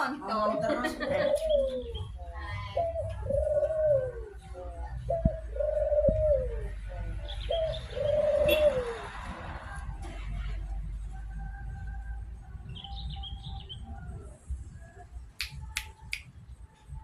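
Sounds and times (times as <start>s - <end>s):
dove cooing: 0.1s - 9.6s.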